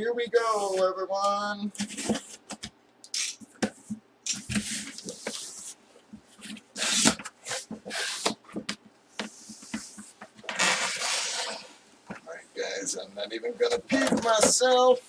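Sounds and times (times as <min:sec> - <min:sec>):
cardboard rustling and scraping: 0:01.7 - 0:12.2.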